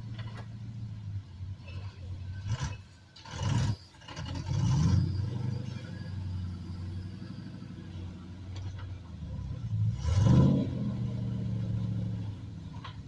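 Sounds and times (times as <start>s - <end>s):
truck engine running and revving: 0.0s - 13.0s.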